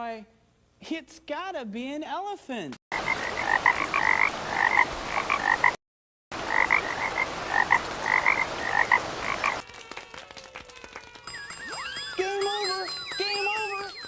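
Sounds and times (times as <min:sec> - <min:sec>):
frogs croaking: 0:03.0 - 0:05.8, 0:06.4 - 0:09.6.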